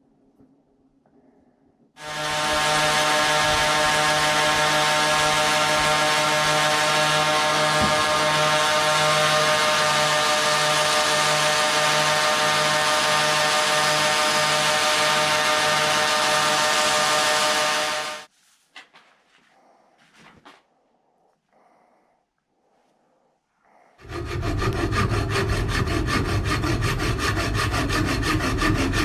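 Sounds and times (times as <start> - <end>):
electric power tool running: 2.0 - 18.3, 24.0 - 29.0
low pulsing beat: 2.1 - 18.3.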